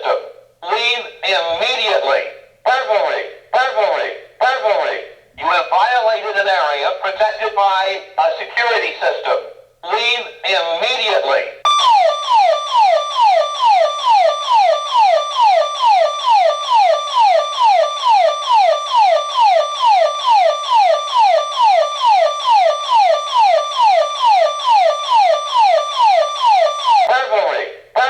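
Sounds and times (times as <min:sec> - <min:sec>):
burglar alarm siren: 0:11.6 - 0:28.0.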